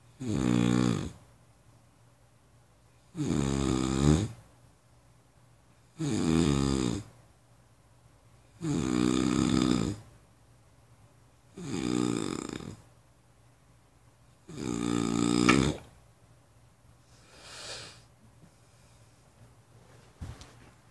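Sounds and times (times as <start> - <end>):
person snoring: 0.2 - 1.2, 3.2 - 4.4, 6.0 - 7.1, 8.6 - 10.0, 11.6 - 12.8, 14.5 - 15.9, 17.2 - 18.1.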